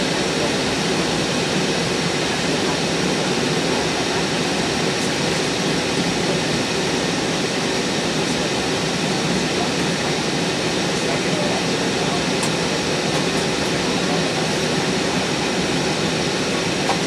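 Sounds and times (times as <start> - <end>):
airplane cabin jet engine rush: 0.0 - 17.0.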